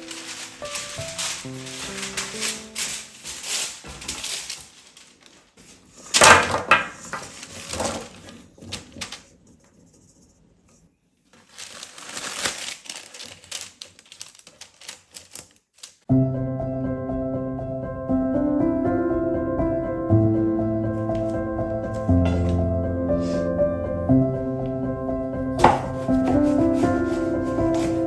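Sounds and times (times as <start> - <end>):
crunching and rustling handling: 0.0 - 9.8, 11.2 - 16.0, 25.6 - 28.0.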